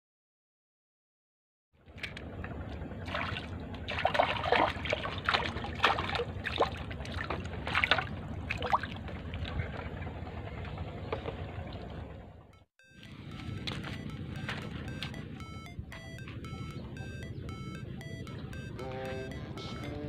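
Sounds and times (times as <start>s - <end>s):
water splashing: 2.4s - 10.1s.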